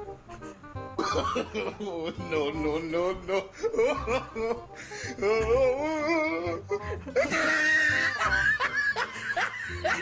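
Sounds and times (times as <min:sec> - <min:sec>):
background music: 0:00.0 - 0:10.0
person laughing: 0:01.0 - 0:02.5, 0:03.4 - 0:10.0
giggling bursts: 0:06.7 - 0:10.0.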